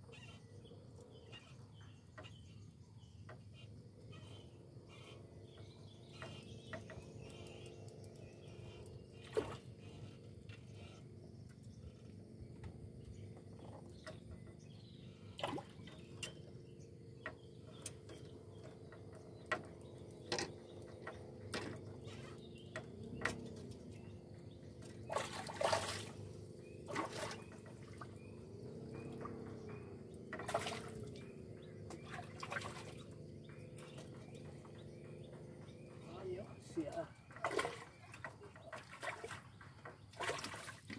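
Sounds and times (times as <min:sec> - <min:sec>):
low wavering hum: 0:00.0 - 0:40.6
water splashing and dripping: 0:24.8 - 0:26.2, 0:26.8 - 0:28.2, 0:30.3 - 0:31.2, 0:31.9 - 0:34.7, 0:36.8 - 0:40.9.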